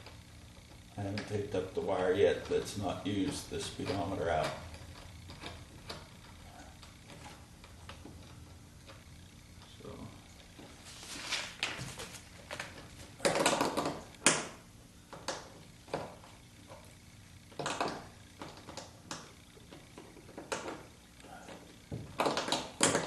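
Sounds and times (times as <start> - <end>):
hands rustling wiring: 0.0 - 17.0.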